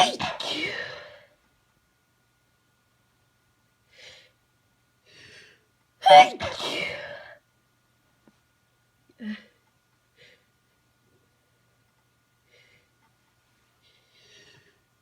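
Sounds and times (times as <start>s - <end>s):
person sneezing: 0.0s - 1.2s, 6.0s - 7.4s.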